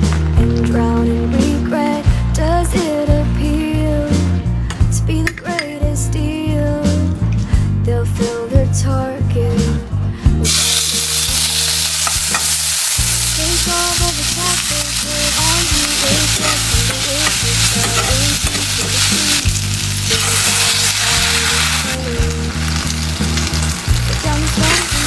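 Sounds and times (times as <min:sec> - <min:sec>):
food sizzling in a pan: 0:10.4 - 0:25.0.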